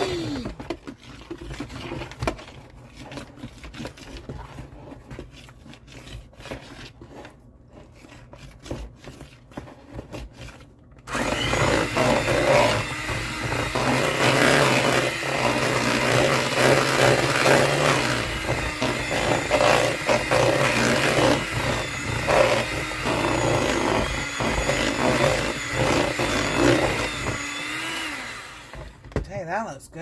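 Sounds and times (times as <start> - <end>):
electric hand mixer running: 0.0 - 0.8, 11.1 - 29.1
scraping and tapping in bowl: 0.5 - 10.8.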